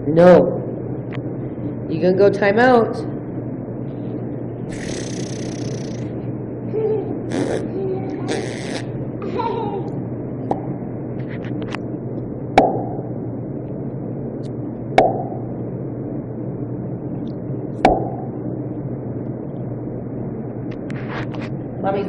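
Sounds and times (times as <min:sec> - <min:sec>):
mouth pops: 0:04.7 - 0:06.0, 0:07.3 - 0:08.9, 0:15.0 - 0:15.4.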